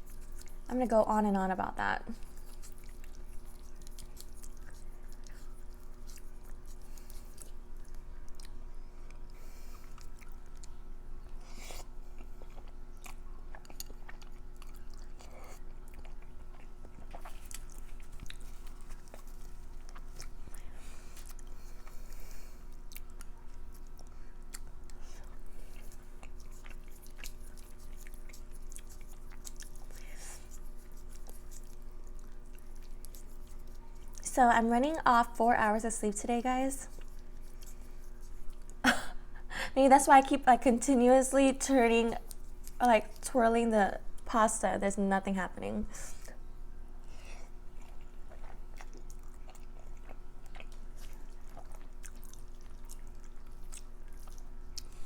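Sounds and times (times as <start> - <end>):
chewing food with wet mouth clicks: 0.0 - 0.7, 2.2 - 34.2, 36.8 - 38.8, 42.1 - 43.2, 47.0 - 55.0
faint steady hum: 0.0 - 55.0.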